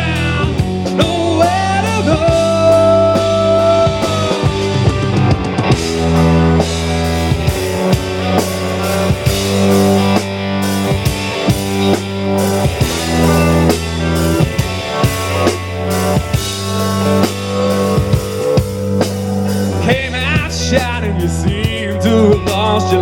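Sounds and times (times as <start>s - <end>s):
rock band playing: 0.0s - 23.0s
sustained guitar note: 2.9s - 21.2s.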